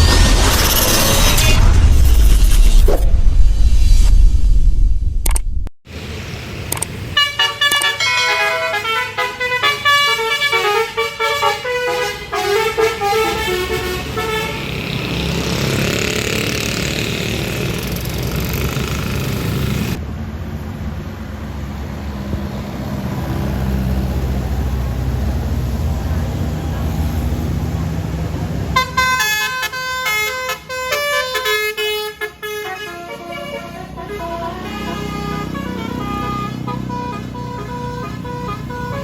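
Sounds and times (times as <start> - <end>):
large bus passing: 5.9 - 39.0
musical air horns playing a tune: 7.2 - 14.7, 28.8 - 39.0.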